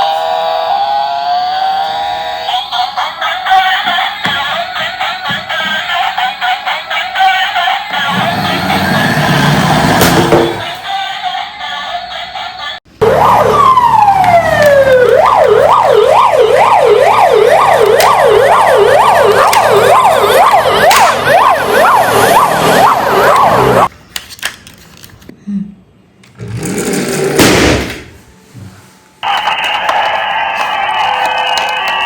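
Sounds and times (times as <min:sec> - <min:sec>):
electronic toy siren: 0:00.0 - 0:06.4, 0:13.0 - 0:23.9, 0:29.2 - 0:32.0.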